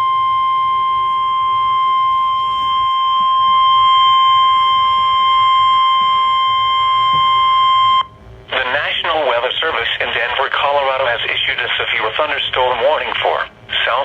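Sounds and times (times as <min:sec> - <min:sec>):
steady high alarm tone: 0:00.0 - 0:10.8.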